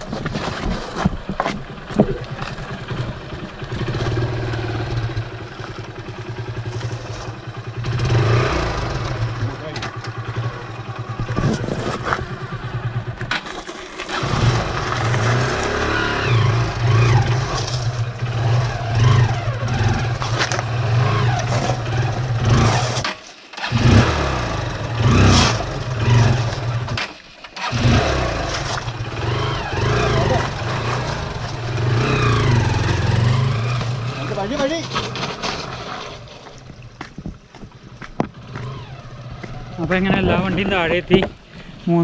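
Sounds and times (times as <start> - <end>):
motorcycle engines running: 0.0 - 41.8.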